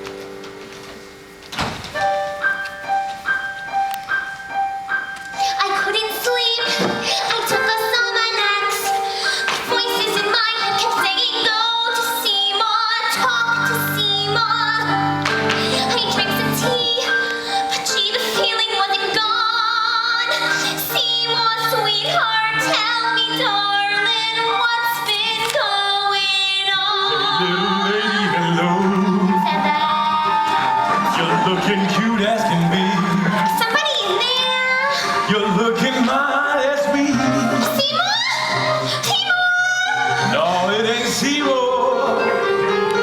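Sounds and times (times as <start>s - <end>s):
woman singing with vibrato: 5.5s - 43.0s
band accompaniment: 27.2s - 36.3s.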